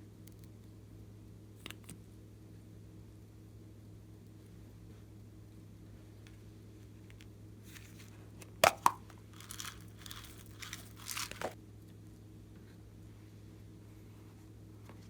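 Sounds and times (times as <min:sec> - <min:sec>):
slime popping: 0:08.6 - 0:11.6.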